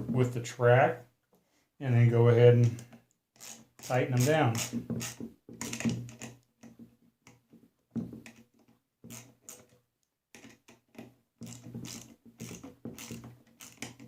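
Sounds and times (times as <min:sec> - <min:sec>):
hand tool clicking: 0:03.4 - 0:06.3, 0:11.4 - 0:14.0.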